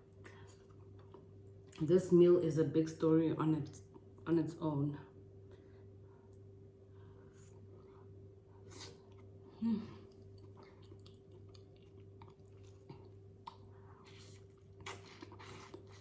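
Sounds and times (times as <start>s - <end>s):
steady low hum: 0.0s - 16.0s
person chewing food: 10.0s - 16.0s.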